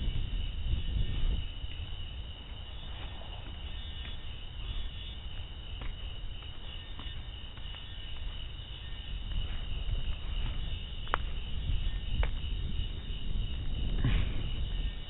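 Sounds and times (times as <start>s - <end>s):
insects chirring: 0.0s - 15.0s
low microphone rumble: 0.0s - 15.0s.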